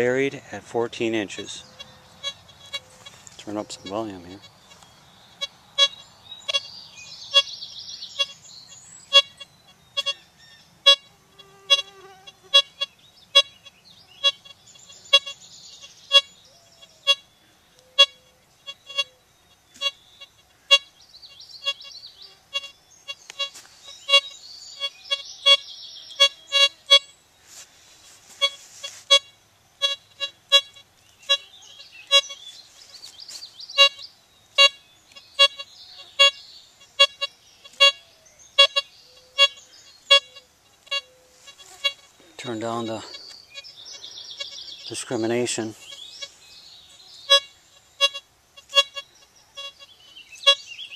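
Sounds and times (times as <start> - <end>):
faint high chirping: 1.1 - 27.6, 28.4 - 50.9
metal detector beeps: 5.4 - 6.7, 9.1 - 10.2, 10.9 - 11.1, 11.7 - 11.9, 12.5 - 15.4, 16.1 - 16.3, 17.8 - 19.2, 19.8 - 20.9, 21.6 - 25.6, 26.2 - 27.1, 28.4 - 31.5, 32.1 - 32.4, 34.6 - 36.4, 37.0 - 38.0, 38.6 - 42.1, 47.3 - 49.8, 50.4 - 50.6.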